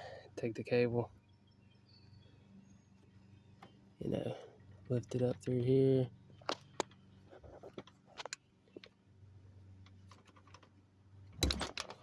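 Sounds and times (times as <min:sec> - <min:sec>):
low steady hum: 0:00.0 - 0:12.0
sliding door cable clicks and rattles: 0:10.1 - 0:12.0.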